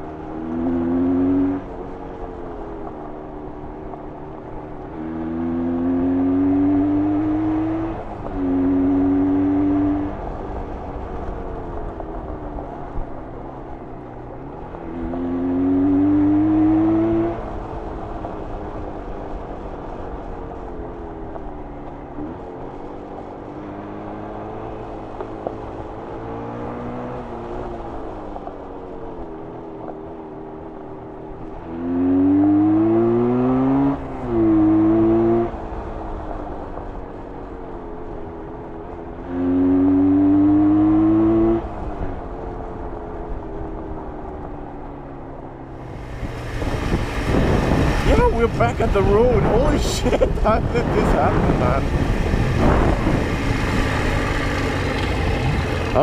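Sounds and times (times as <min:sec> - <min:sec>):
two-stroke motorcycle engine revving: 0:45.8 - 0:56.0.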